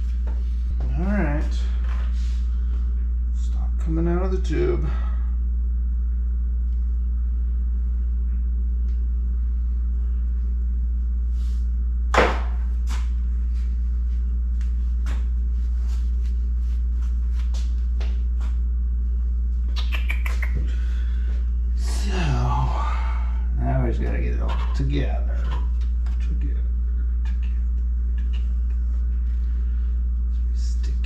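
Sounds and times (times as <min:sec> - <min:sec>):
steady low hum: 0:00.0 - 0:31.0
sharp knock: 0:12.1 - 0:12.6.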